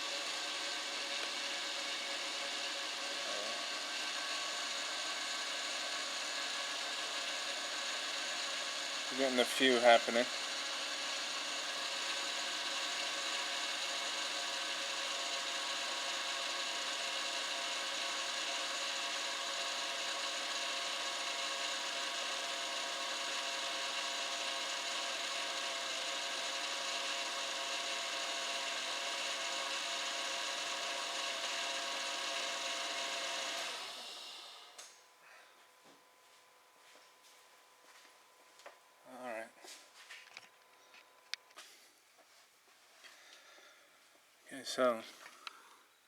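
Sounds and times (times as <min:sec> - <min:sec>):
car engine running with misfire: 0:00.0 - 0:34.7.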